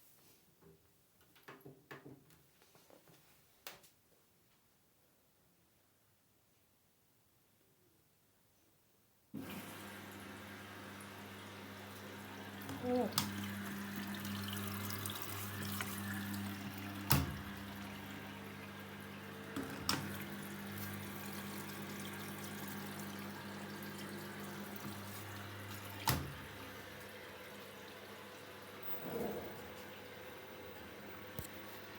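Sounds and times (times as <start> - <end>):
washing machine motor hum: 9.4 - 31.9.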